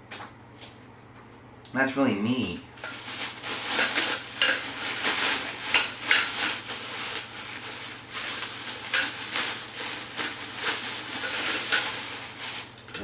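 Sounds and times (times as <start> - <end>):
plastic packaging crinkling: 2.8 - 12.9.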